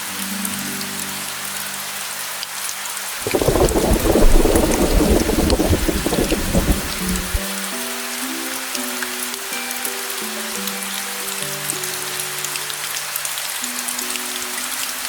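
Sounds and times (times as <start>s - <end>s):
soft background music: 0.0s - 2.4s, 7.6s - 15.0s
rain hissing: 3.2s - 7.4s
raindrops ticking: 3.2s - 7.4s
thunder rumbling: 3.2s - 7.4s.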